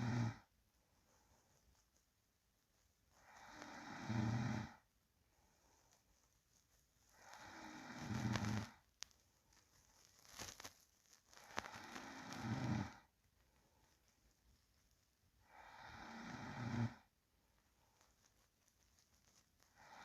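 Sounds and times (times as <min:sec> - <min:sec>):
person snoring: 0:00.0 - 0:00.5, 0:03.2 - 0:04.8, 0:07.2 - 0:08.8, 0:11.5 - 0:13.1, 0:15.4 - 0:17.1.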